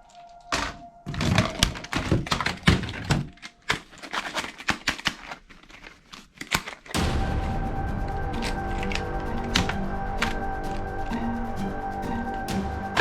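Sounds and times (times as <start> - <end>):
background music: 0.0 - 3.8, 7.0 - 13.0
plastic toy guns rattling: 0.0 - 7.0.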